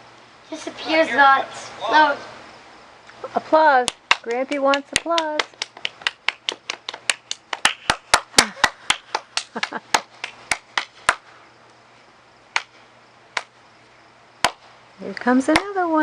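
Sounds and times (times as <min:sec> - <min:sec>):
people clapping: 0:03.9 - 0:11.3.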